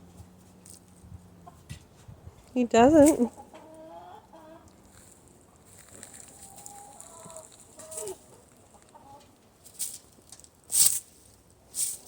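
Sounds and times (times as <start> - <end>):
chickens clucking: 1.3 - 2.4, 3.0 - 9.6.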